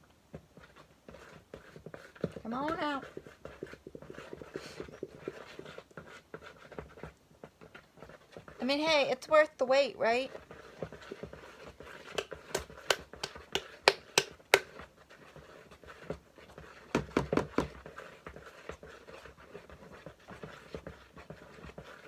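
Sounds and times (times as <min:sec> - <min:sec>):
glue bottle sputtering and popping: 0:02.4 - 0:05.7.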